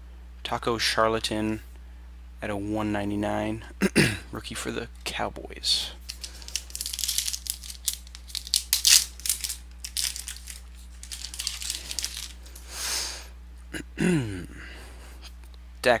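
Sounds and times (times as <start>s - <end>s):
card pack wrapper crinkling and tearing: 6.0s - 12.6s
cards clicking and rustling: 6.0s - 12.7s.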